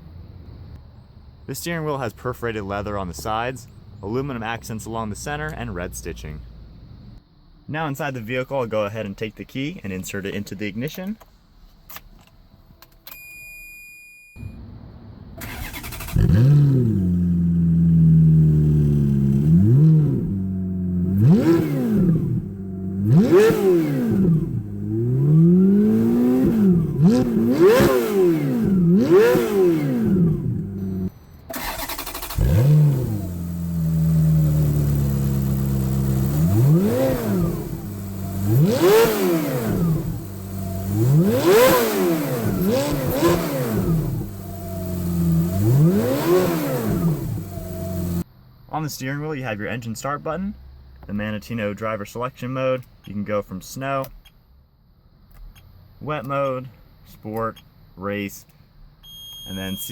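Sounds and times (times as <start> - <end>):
car engine idling: 14.5 - 51.4
engine revving: 15.4 - 48.2
brief electronic tone: 30.8 - 31.5, 59.0 - 59.9.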